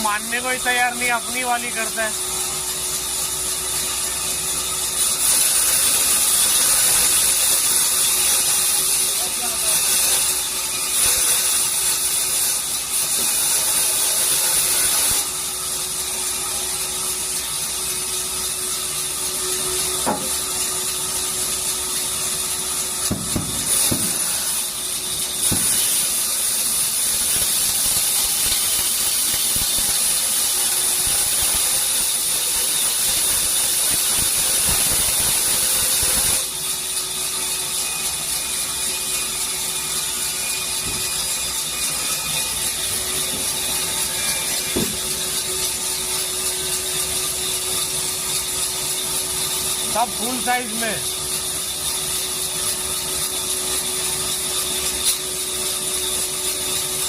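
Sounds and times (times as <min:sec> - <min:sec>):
band saw blade hissing in wood: 0:23.0 - 0:36.4.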